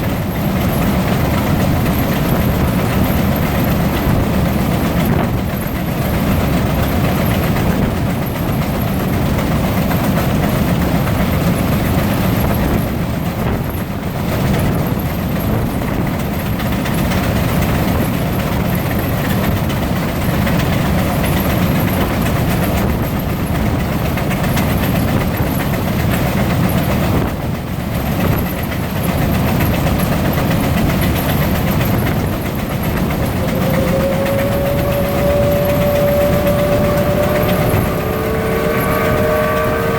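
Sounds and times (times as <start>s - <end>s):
steam engines rumbling: 0.0s - 39.9s
steady tone: 31.2s - 39.9s.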